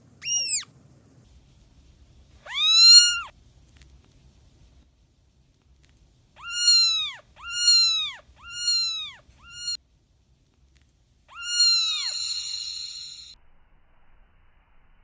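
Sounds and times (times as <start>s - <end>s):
kitten meowing: 0.2s - 0.6s, 2.5s - 3.3s.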